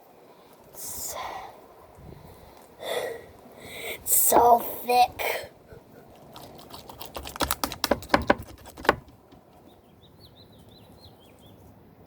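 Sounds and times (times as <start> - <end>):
slime squelching with wet pops: 6.1 - 9.4
bird chirping: 9.2 - 11.7.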